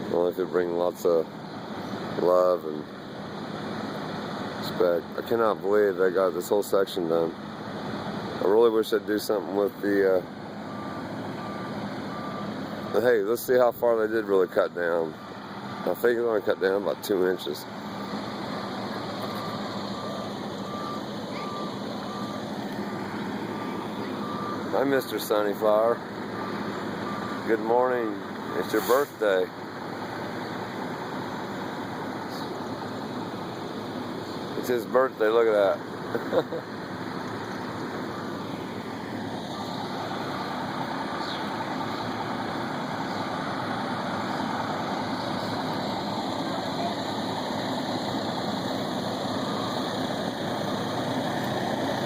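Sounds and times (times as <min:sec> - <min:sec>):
diesel engine humming: 0:00.0 - 0:52.0
reversing alarm beeping: 0:10.6 - 0:13.0, 0:18.3 - 0:22.7, 0:23.4 - 0:29.2, 0:48.3 - 0:51.6.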